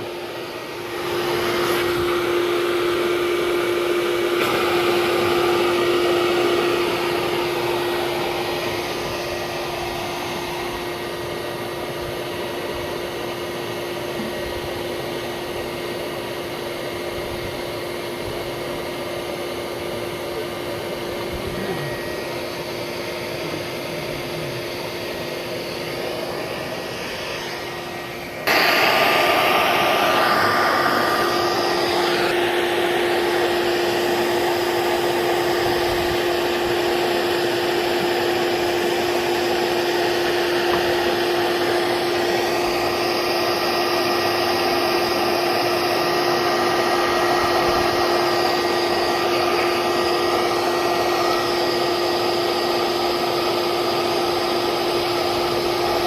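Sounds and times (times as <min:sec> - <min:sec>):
motor droning: 0:19.8 - 0:56.0.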